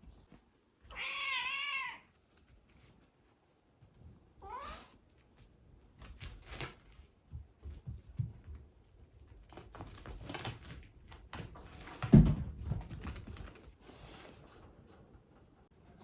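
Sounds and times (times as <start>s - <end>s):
cat meowing: 0.9s - 2.1s, 4.4s - 5.0s.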